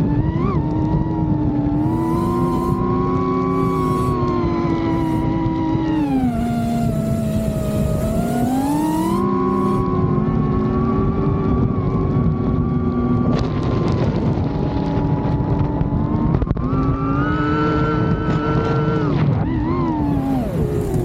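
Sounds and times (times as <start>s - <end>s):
drone motors whining: 0.0s - 12.2s, 16.6s - 21.0s.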